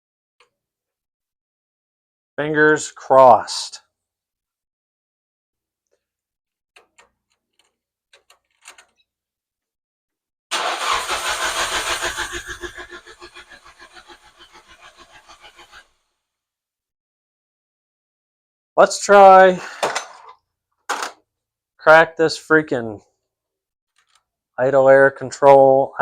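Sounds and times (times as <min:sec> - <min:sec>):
starter cranking engine: 0:10.5 - 0:15.9.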